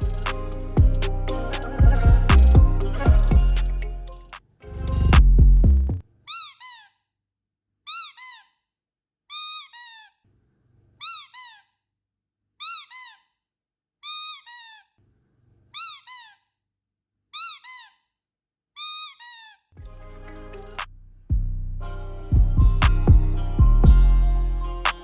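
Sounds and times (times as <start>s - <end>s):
squeaky dog toy squeaking: 6.2s - 7.0s, 7.9s - 8.6s, 9.3s - 10.2s, 11.0s - 11.7s, 12.6s - 13.3s, 14.0s - 14.9s, 15.7s - 16.4s, 17.3s - 18.0s, 18.8s - 19.7s.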